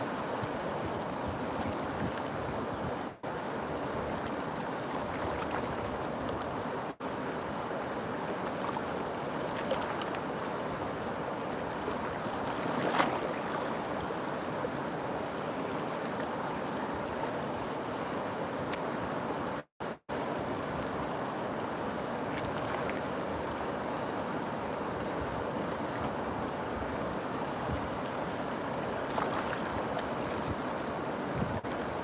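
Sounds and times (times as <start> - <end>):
river water rushing: 0.0 - 32.0
water splash: 12.4 - 13.8, 29.0 - 30.6.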